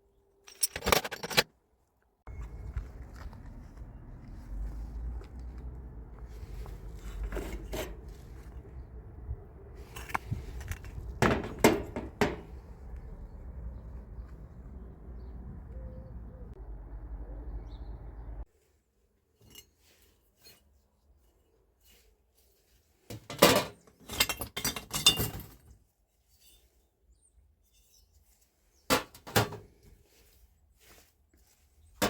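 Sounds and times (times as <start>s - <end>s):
metal parts clinking: 0.4s - 1.5s, 9.8s - 12.4s, 23.6s - 25.6s.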